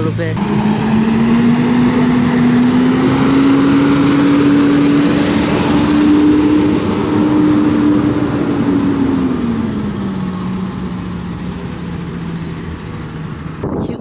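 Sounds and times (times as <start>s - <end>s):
tyre and road noise: 0.0s - 14.0s
vehicle engine hum: 0.0s - 14.0s.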